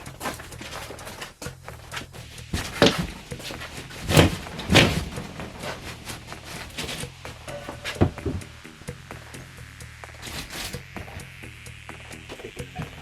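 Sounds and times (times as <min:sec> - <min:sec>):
demolition knocks and thuds: 0:00.0 - 0:08.7
footsteps: 0:00.0 - 0:09.1, 0:10.1 - 0:11.4.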